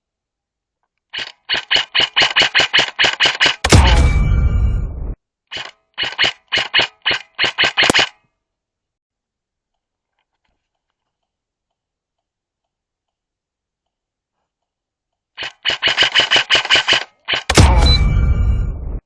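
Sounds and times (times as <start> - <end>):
airsoft gun firing sharp shots: 1.5 - 4.0, 6.0 - 8.2, 15.4 - 18.1.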